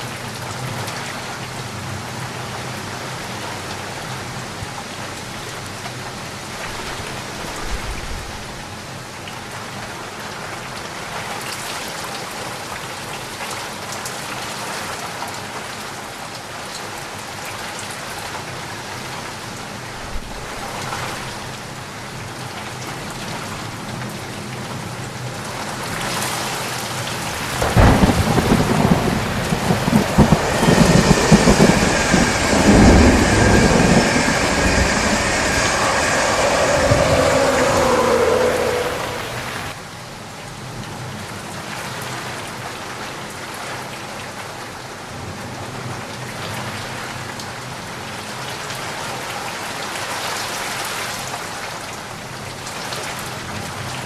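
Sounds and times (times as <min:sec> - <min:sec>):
steady rain falling: 0:26.7 - 0:39.8
low rumble of thunder: 0:27.0 - 0:39.8.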